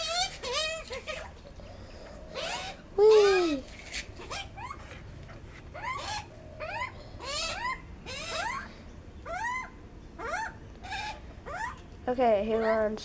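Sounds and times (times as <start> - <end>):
parrot squeaky calls: 0.0 - 1.4, 2.4 - 4.8, 5.7 - 11.8.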